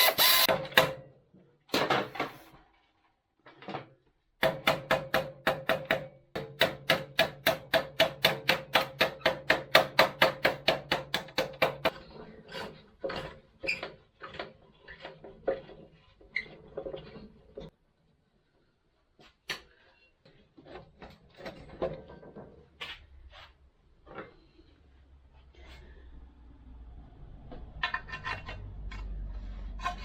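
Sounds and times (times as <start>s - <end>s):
hammer strikes on metal: 0.5s - 1.0s, 4.4s - 11.9s.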